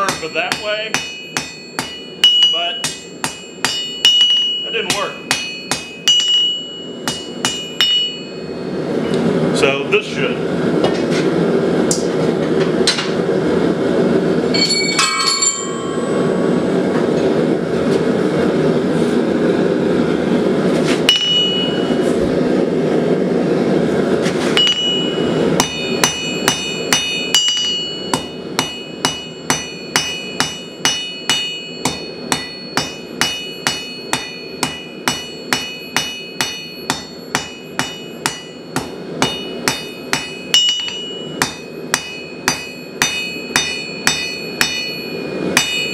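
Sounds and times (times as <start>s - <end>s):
hammer striking steel on anvil: 0.0s - 8.7s, 14.5s - 17.2s, 21.1s - 22.0s, 24.6s - 45.9s
steady rushing noise: 15.5s - 45.9s.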